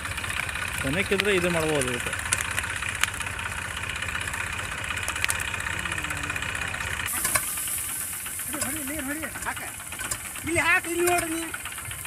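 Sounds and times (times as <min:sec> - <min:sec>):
tractor diesel engine idling: 0:00.0 - 0:12.0
high hiss: 0:07.0 - 0:12.0
sharp clicks: 0:08.5 - 0:11.6.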